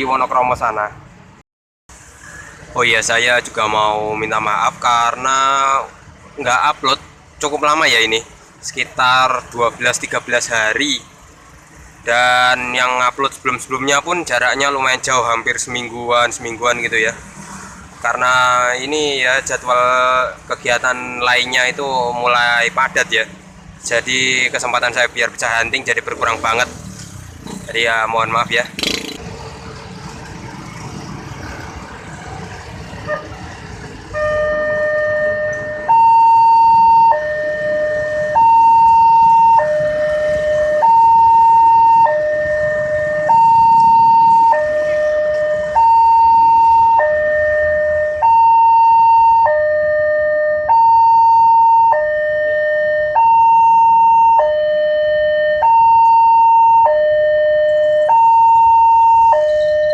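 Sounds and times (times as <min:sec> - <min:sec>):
two-tone level-crossing siren: 0:34.1 - 0:59.9.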